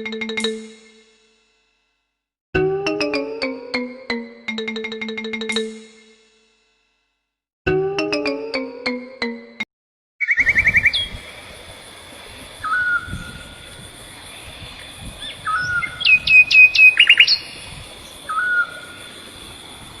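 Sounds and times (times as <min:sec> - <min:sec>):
bird trilling: 0:10.2 - 0:11.3, 0:12.6 - 0:13.5, 0:15.2 - 0:19.2
loud bird chirps: 0:10.2 - 0:11.4, 0:12.6 - 0:13.6, 0:14.8 - 0:19.2
whistled bird notes: 0:10.2 - 0:11.4, 0:12.6 - 0:13.6, 0:14.8 - 0:19.2.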